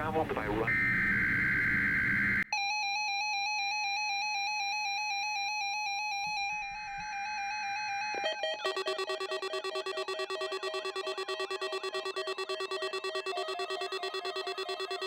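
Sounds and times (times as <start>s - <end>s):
electronic alarm tone: 0.7s - 15.0s
fast pulsing multi-tone beep: 8.1s - 15.0s
buzzing data bursts: 8.2s - 15.0s.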